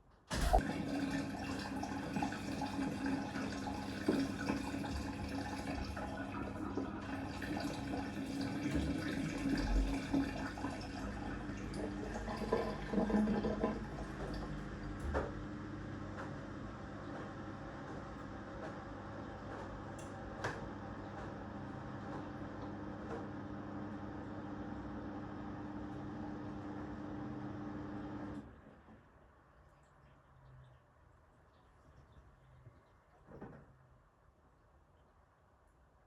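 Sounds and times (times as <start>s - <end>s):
washing machine filling with water: 0.3s - 28.5s.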